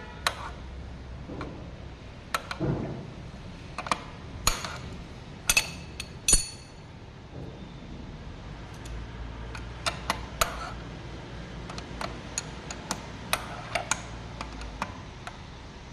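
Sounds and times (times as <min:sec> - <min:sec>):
metal tools clinking: 0:05.5 - 0:06.8.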